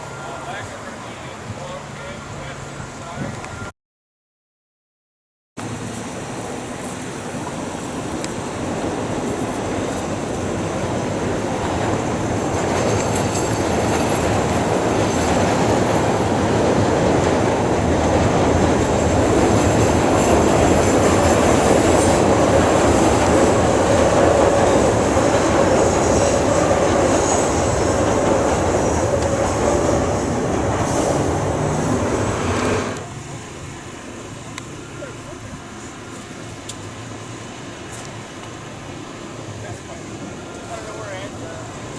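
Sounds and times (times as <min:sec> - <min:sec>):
train wheels running on rails: 0:05.6 - 0:41.9
high wheel squeal: 0:08.4 - 0:33.0.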